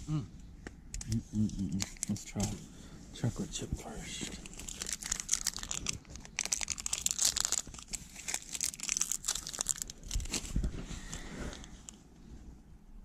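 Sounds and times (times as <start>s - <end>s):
plastic wrapper crinkling: 1.0s - 2.5s, 4.2s - 12.0s.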